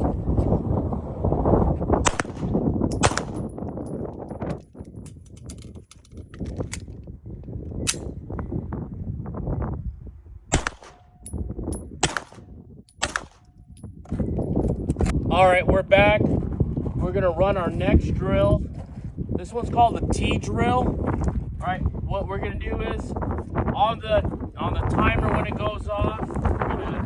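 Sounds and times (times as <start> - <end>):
heavy rumbling movement noise: 0.0 - 27.0
pistol shots: 2.0 - 3.5, 10.5 - 11.3, 12.0 - 13.5.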